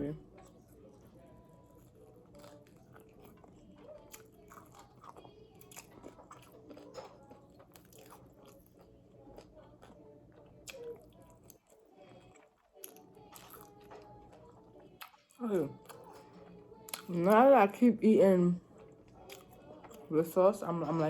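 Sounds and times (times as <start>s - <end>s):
faint steady hum: 0.0s - 21.0s
crunching fried chicken: 0.2s - 17.1s, 18.8s - 20.1s
wet chewing: 0.2s - 17.5s, 18.7s - 21.0s.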